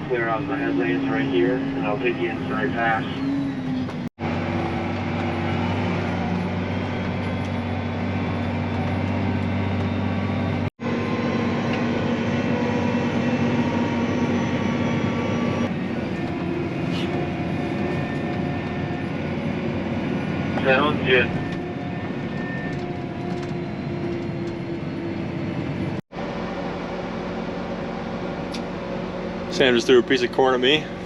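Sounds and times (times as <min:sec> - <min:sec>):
tractor engine drone: 0:00.0 - 0:31.0.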